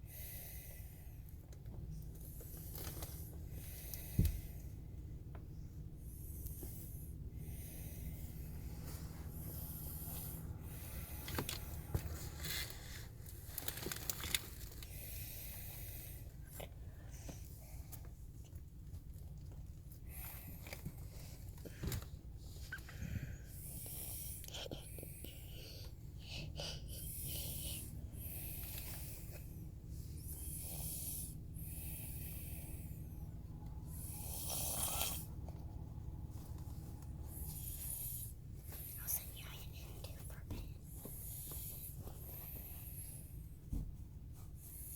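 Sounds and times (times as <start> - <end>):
steady low hum: 0.0 - 44.9
snoring breaths: 6.0 - 17.9, 20.0 - 43.7
soft hissing snore: 30.2 - 35.4, 37.2 - 39.4.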